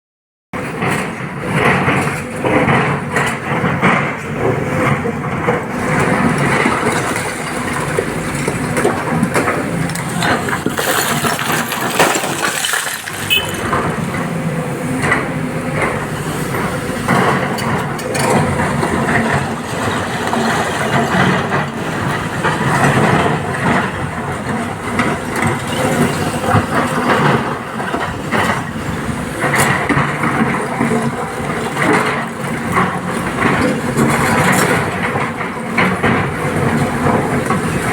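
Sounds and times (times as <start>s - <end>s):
excavator diesel engine under load: 0.6s - 37.9s
stone clattering into steel truck bed: 8.4s - 14.0s.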